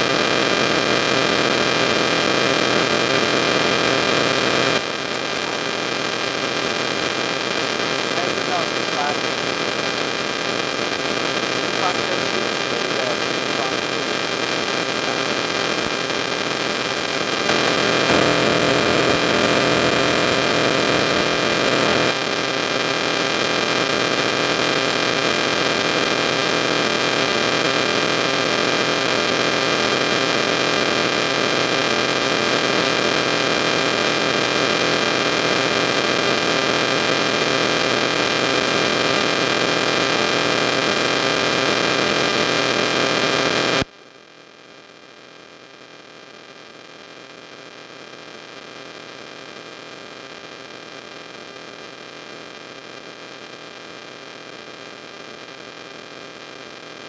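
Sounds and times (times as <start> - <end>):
electrical hum and static hiss: 0.0 - 43.9.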